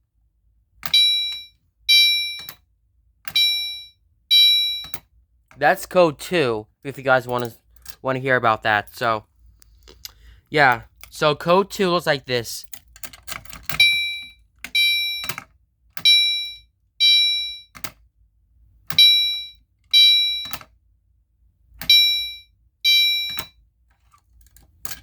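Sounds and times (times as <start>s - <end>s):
fire alarm chime tones: 0.9s - 2.6s, 3.3s - 5.0s, 13.8s - 15.4s, 16.0s - 17.8s, 18.9s - 20.7s, 21.9s - 23.6s.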